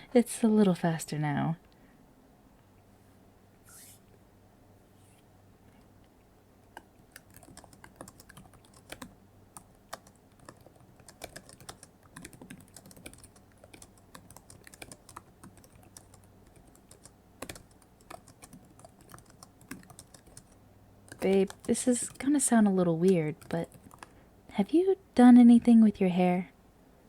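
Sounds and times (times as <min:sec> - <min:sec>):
typing on keyboard: 0:06.7 - 0:24.2.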